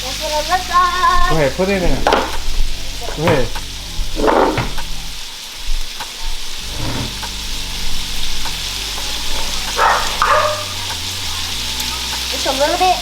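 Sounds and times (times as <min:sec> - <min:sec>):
food sizzling in oil: 0:00.0 - 0:13.0
utensil clicking against pan: 0:02.0 - 0:05.0.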